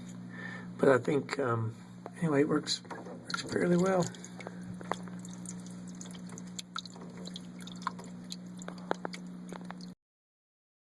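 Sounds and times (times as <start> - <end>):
electric water pump humming: 0.0 - 10.0
water dripping and splashing: 2.9 - 9.9.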